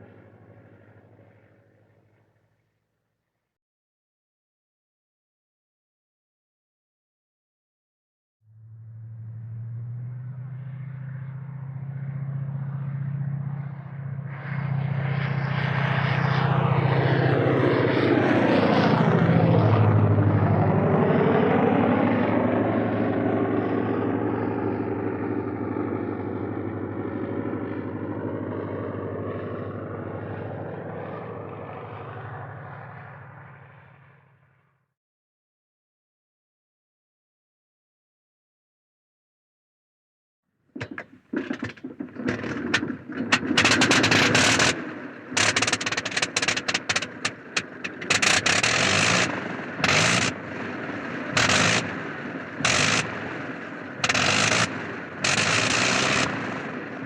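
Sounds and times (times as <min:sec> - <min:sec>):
propeller airplane flying past: 0:00.0 - 0:02.7, 0:08.5 - 0:34.9, 0:40.8 - 0:57.0.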